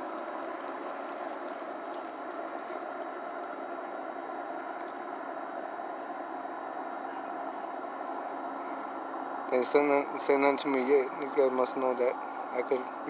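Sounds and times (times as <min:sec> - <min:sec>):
faint clicks: 0:00.0 - 0:03.1, 0:04.6 - 0:05.0
engine drone: 0:00.0 - 0:13.0.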